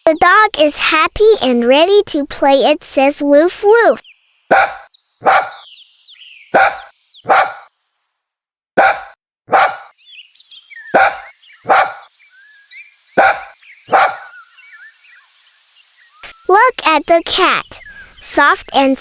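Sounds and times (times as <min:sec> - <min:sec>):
dog barking: 0:04.5 - 0:05.7, 0:06.5 - 0:07.7, 0:08.8 - 0:09.9, 0:10.9 - 0:12.1, 0:13.2 - 0:14.4
faint bird chirping: 0:04.5 - 0:16.2.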